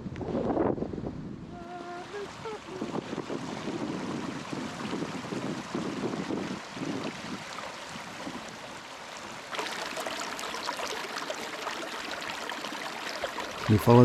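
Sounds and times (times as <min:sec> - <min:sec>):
wind on microphone: 0:00.0 - 0:09.4
brook water over stones: 0:01.7 - 0:14.0.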